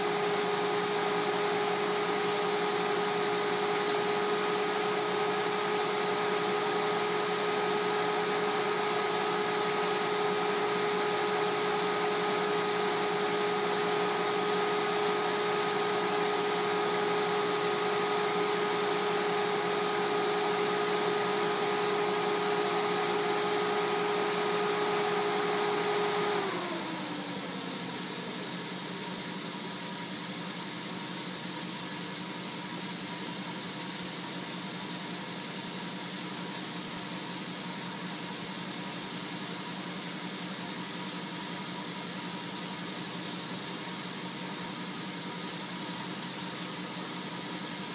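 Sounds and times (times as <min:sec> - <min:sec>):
car engine idling: 0:00.0 - 0:25.5.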